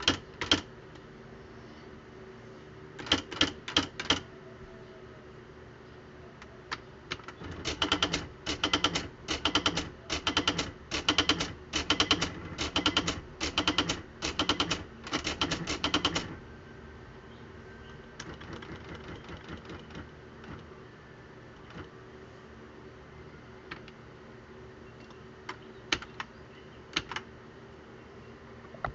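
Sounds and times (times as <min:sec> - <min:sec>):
electric typewriter striking keys: 0:00.0 - 0:00.7, 0:03.0 - 0:04.3, 0:07.1 - 0:16.4, 0:18.2 - 0:20.7, 0:21.6 - 0:21.9.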